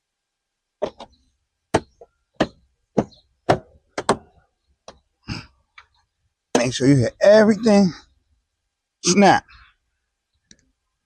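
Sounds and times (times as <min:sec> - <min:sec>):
hand knocking plastic panel: 0:01.8 - 0:04.3.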